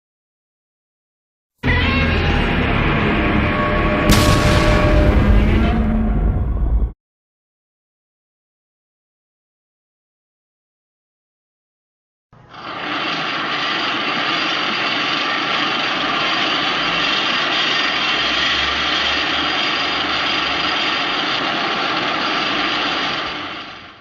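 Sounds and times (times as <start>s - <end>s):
monster roar: 3.1s - 6.6s.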